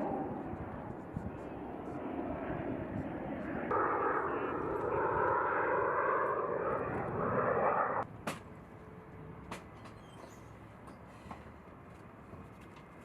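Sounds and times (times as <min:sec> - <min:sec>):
jet engine roar: 0:00.0 - 0:08.1.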